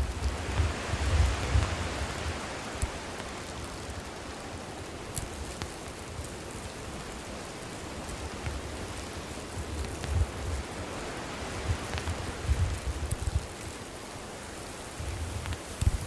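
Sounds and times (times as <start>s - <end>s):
burning wood popping and crackling: 0.0s - 16.0s
campfire hissing: 0.0s - 16.0s.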